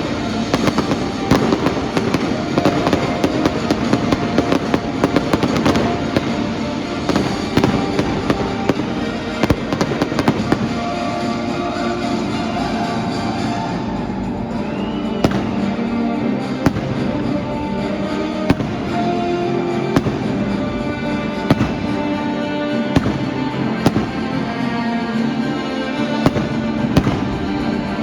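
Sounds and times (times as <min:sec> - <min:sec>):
fireworks bangs: 0:00.0 - 0:13.8, 0:14.5 - 0:28.0
steady music: 0:00.0 - 0:28.0.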